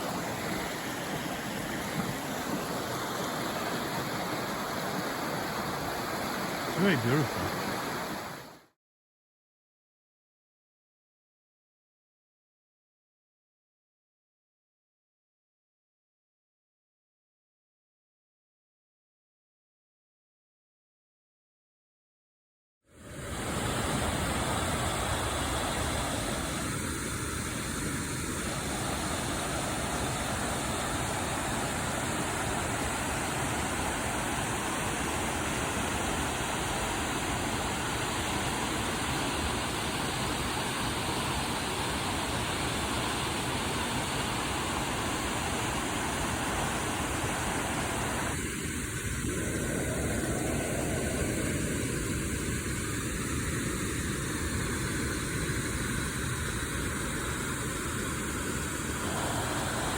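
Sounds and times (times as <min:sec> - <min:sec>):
fast-flowing water rushing: 0:00.0 - 0:08.6, 0:23.0 - 0:59.9.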